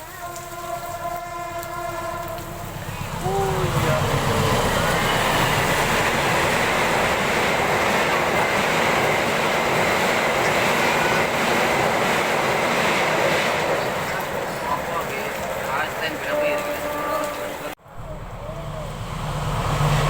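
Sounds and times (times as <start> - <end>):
train wheels rushing on rails: 0.0 - 20.0.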